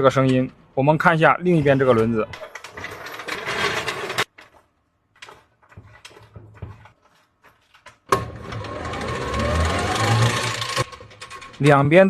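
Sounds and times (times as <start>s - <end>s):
wheels rattling and whirring: 1.7s - 12.0s
electric motor whining: 8.4s - 10.8s.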